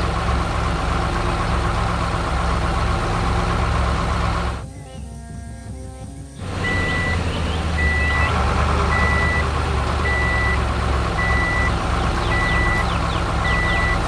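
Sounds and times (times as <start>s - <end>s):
low engine rumble: 0.0s - 4.7s, 6.3s - 14.0s
reversing alarm beeping: 6.4s - 14.0s.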